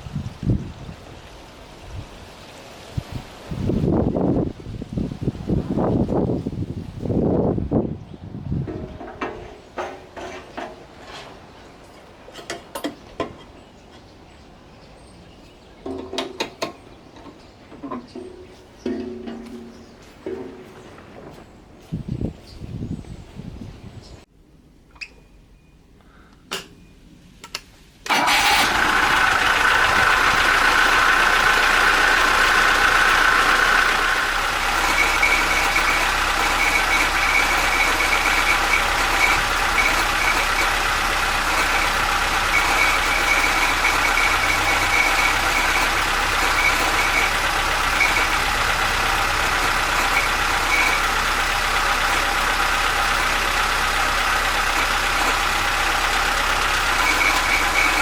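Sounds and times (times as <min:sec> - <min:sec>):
air compressor running with whine: 0:28.1 - 0:58.0.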